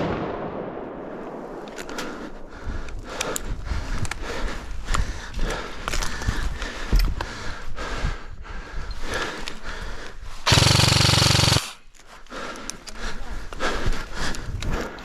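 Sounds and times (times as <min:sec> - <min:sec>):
gear rustling and clicking: 0:02.8 - 0:07.3, 0:08.8 - 0:15.0
airsoft gun full-auto burst: 0:10.4 - 0:11.8.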